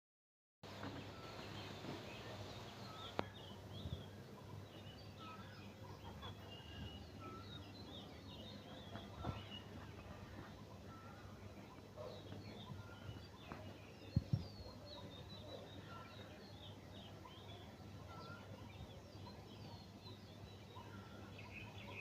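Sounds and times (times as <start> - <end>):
birds chirping and whistling: 0.8 - 22.0.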